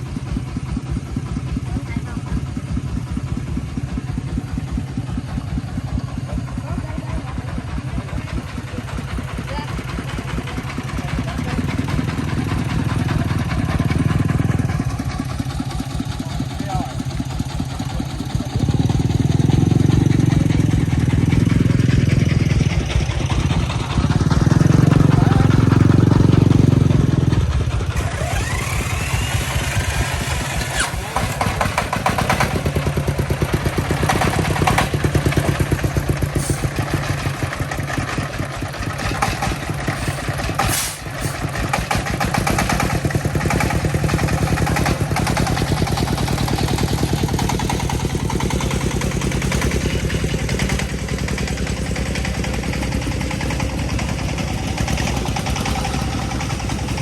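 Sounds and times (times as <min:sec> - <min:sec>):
diesel engine chugging: 0:00.0 - 0:57.0
knocks and rattles: 0:29.6 - 0:57.0.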